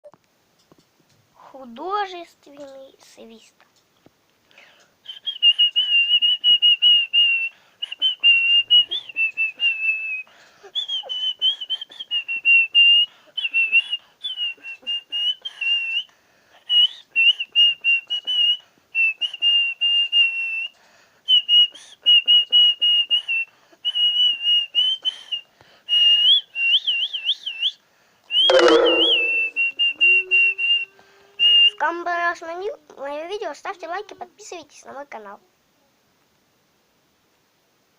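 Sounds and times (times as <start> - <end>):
person whistling a melody: 5.1 - 16.1, 21.3 - 31.8.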